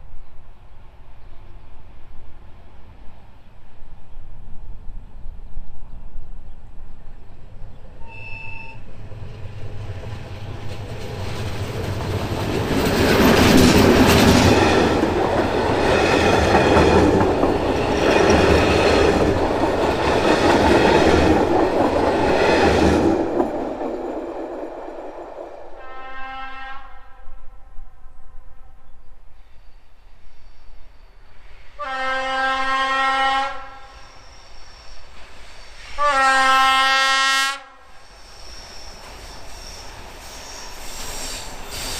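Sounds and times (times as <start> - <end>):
train wheels clattering: 9.7 - 25.7
locomotive horn: 25.8 - 28.8, 31.8 - 34.0, 36.0 - 37.9.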